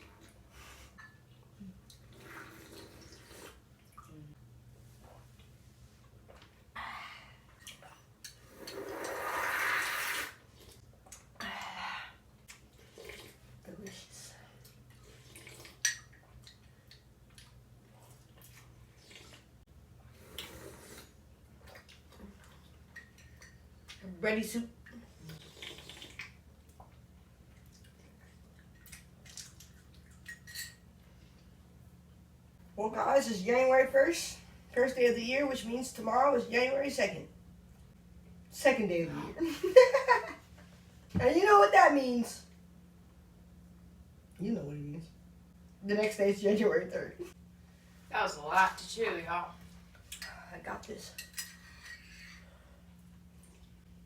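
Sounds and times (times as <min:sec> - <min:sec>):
person slurping soup: 0:02.1 - 0:03.6, 0:08.4 - 0:10.8, 0:12.8 - 0:13.4, 0:15.0 - 0:15.8, 0:20.1 - 0:21.2, 0:25.2 - 0:26.3.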